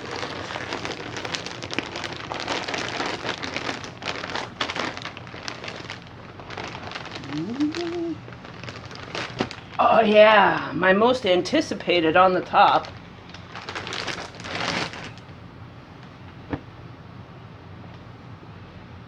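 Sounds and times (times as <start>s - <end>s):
plastic packaging crinkling: 0.0s - 10.4s, 11.1s - 15.4s.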